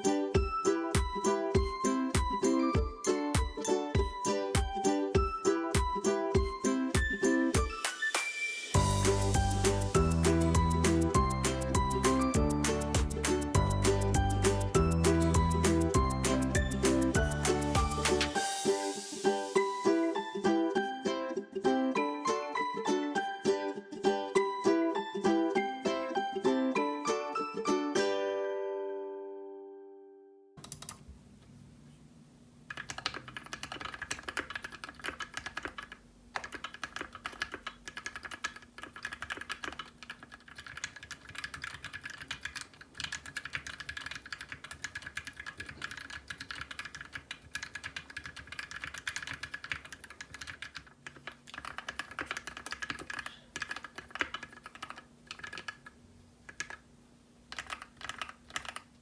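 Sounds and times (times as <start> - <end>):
mechanical keyboard typing: 30.6 - 31.0, 32.7 - 56.8, 57.5 - 58.9.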